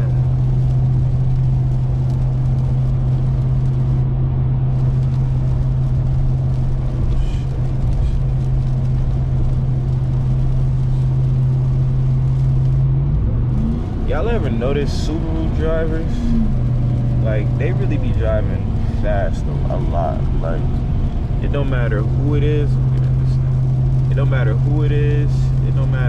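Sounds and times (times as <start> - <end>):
engine drone inside vehicle: 0.0 - 26.0
rain: 0.0 - 26.0
tyres hissing on wet road: 4.7 - 12.8, 13.6 - 26.0.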